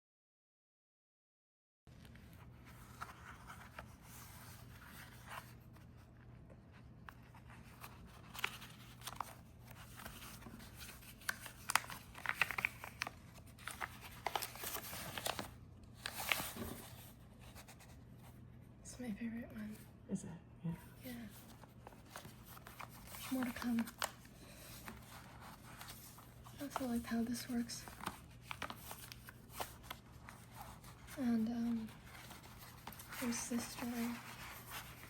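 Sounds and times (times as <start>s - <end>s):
paper pages rustling: 1.9s - 18.4s, 21.0s - 35.0s
clicks and crinkles: 7.0s - 17.2s, 21.3s - 35.0s.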